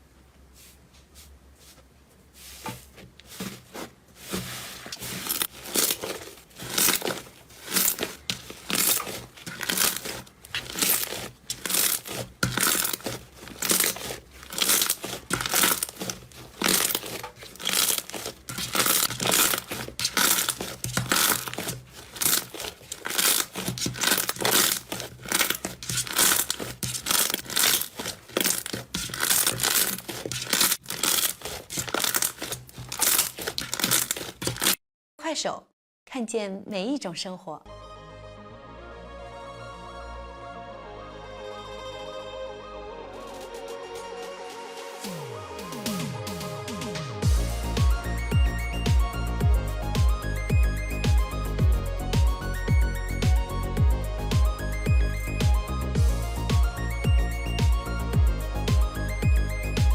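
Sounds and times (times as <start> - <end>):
slime squeezed by hand: 4.2 - 34.8.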